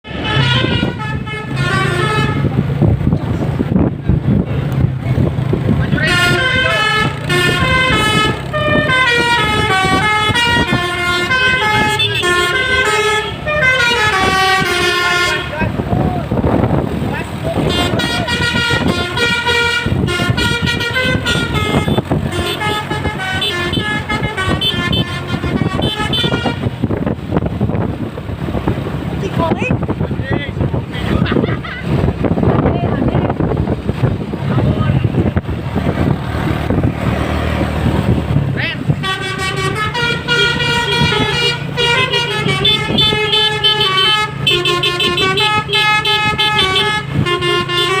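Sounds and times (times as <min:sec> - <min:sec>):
electric trumpet horns playing tune: 0:00.0 - 0:02.6, 0:06.0 - 0:15.7, 0:17.6 - 0:26.9, 0:38.9 - 0:48.0.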